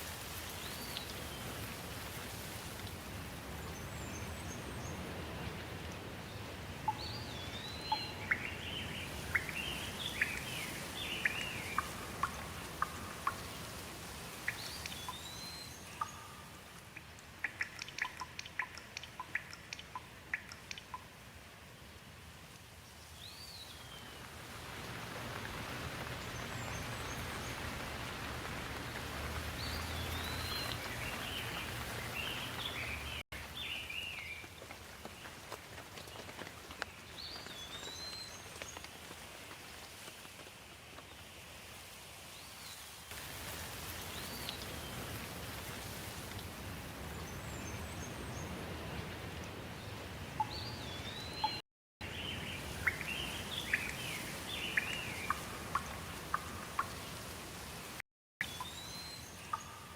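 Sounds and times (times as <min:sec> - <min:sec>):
sharp water drips: 0:00.0 - 0:06.1, 0:06.8 - 0:21.4, 0:24.0 - 0:40.5, 0:43.1 - 0:59.9
steady rain: 0:00.0 - 0:59.9
birds chirping: 0:06.9 - 0:13.6, 0:29.4 - 0:34.4, 0:50.4 - 0:57.2.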